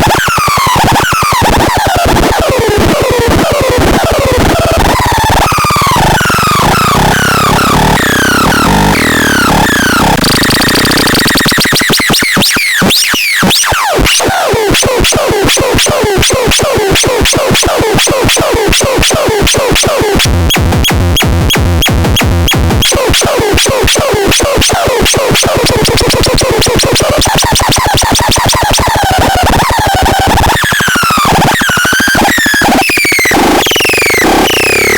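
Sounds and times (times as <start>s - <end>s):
glitchy synthesized pattern: 0.0s - 34.9s
low pulsing bass: 3.9s - 11.2s.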